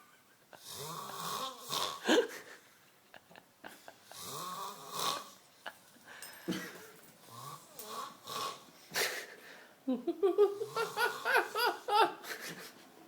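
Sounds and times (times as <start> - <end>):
man snoring: 0.6 - 2.0, 4.2 - 5.3, 7.3 - 8.6.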